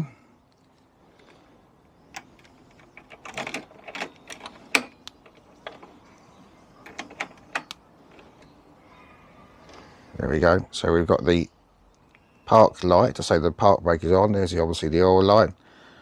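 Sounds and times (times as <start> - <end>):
key clicks and rattles: 2.0 - 8.8.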